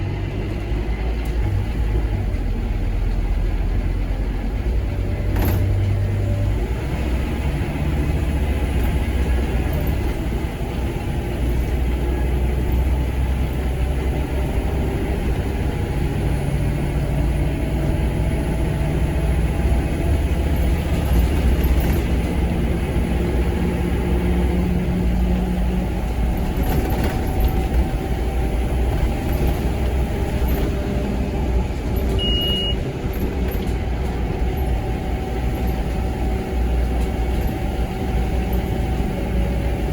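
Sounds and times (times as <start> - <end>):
bus diesel engine pulling hard: 0.0 - 39.9
short high beep: 32.2 - 32.8.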